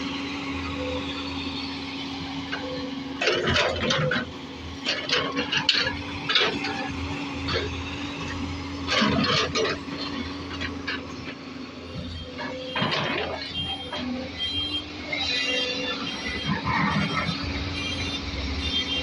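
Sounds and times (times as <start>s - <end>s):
diesel engine running: 0.0s - 19.0s.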